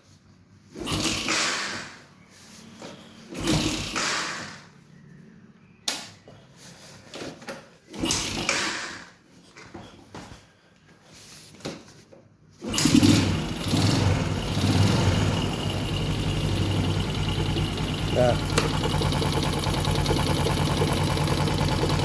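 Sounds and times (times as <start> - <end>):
motorcycle engine cranking: 12.6 - 22.0
motorcycle engine idling: 12.8 - 22.0.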